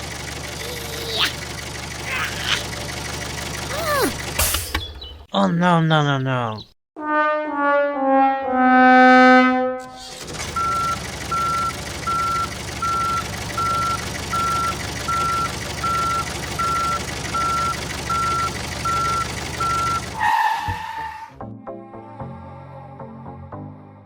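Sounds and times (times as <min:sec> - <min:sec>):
engine rumble: 0:00.0 - 0:05.3, 0:10.1 - 0:20.2
descending sad trombone effect: 0:07.0 - 0:10.0
vehicle reversing alarm beeping: 0:10.5 - 0:20.3.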